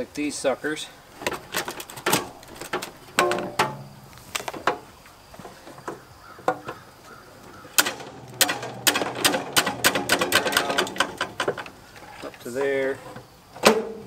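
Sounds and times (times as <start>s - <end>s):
hand tools clicking and rattling: 1.2s - 4.9s, 7.4s - 11.8s.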